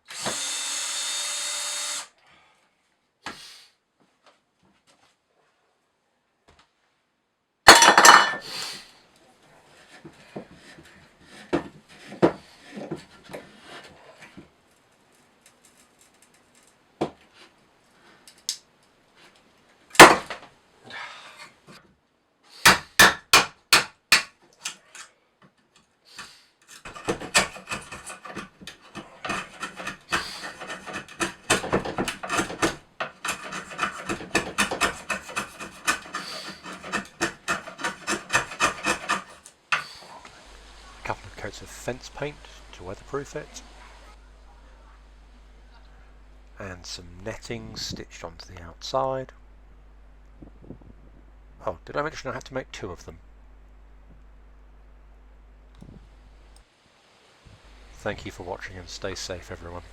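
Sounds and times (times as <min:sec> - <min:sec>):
wood clattering: 0:07.7 - 0:08.4, 0:20.0 - 0:20.4, 0:26.8 - 0:40.0
rhythmic rubbing strokes on wood: 0:26.9 - 0:44.4.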